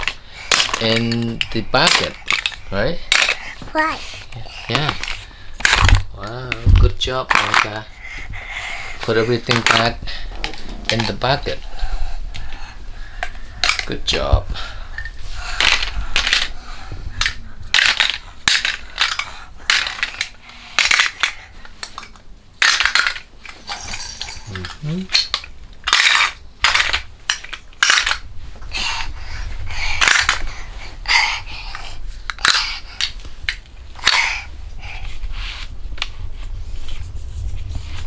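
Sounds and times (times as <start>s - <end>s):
toy pieces clattering into bucket: 0.0s - 7.8s, 9.0s - 11.5s, 17.2s - 28.2s.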